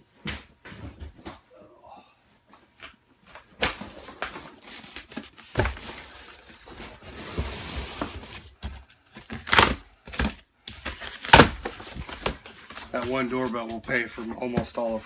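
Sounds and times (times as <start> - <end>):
packaging rustling and crinkling: 3.6 - 15.0.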